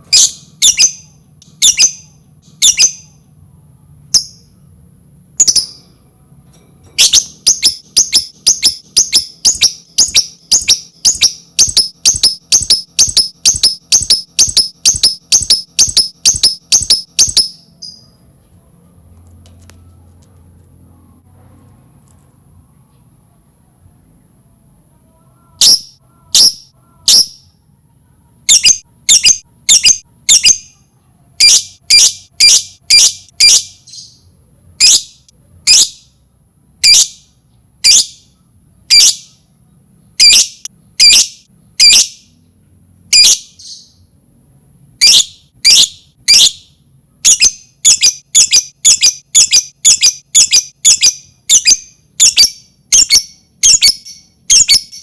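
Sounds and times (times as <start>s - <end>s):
lovebird squawking chirps: 0.1s - 3.2s, 7.0s - 18.1s, 38.9s - 39.4s, 40.2s - 42.2s, 45.0s - 55.0s.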